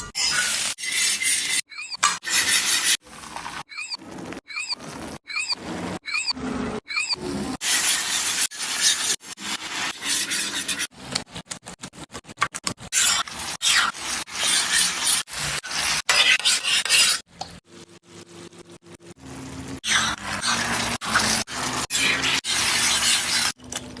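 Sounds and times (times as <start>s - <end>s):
utensil scraping and stirring in pan: 0.2s - 11.5s, 12.9s - 17.6s, 19.8s - 24.0s
sizzling: 7.6s - 24.0s.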